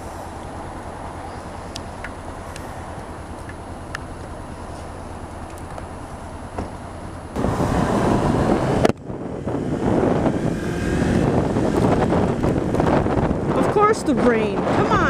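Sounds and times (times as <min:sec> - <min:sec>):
motorcycle engine: 0:00.0 - 0:15.0
wind buffeting microphone: 0:07.2 - 0:15.0.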